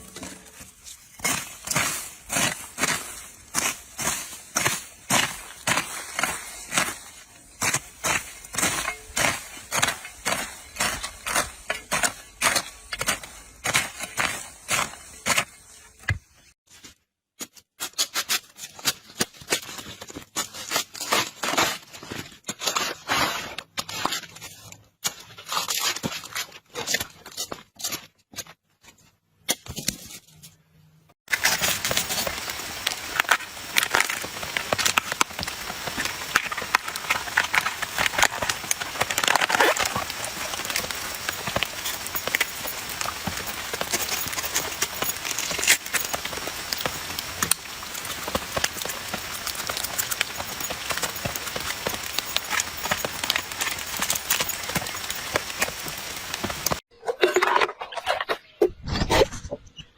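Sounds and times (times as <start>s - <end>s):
dense crackling hiss: 31.3s - 56.8s.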